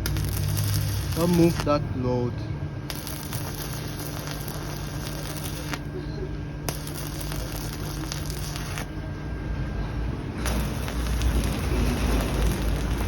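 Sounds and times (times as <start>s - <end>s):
welding arc crackling: 0.0s - 2.1s, 2.8s - 6.0s, 6.6s - 9.0s, 10.2s - 13.0s
steady low hum: 0.0s - 13.0s.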